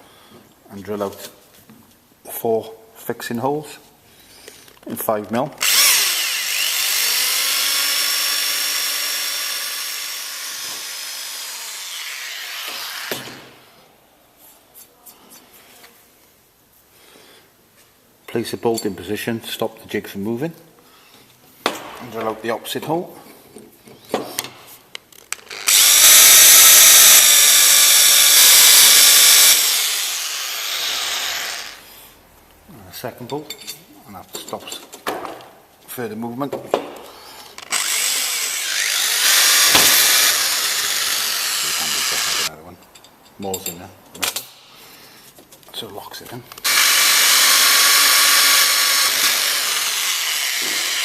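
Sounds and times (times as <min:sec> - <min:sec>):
power drill whine: 0:05.6 - 0:13.4, 0:25.5 - 0:31.8, 0:37.6 - 0:42.5, 0:46.6 - 0:51.0.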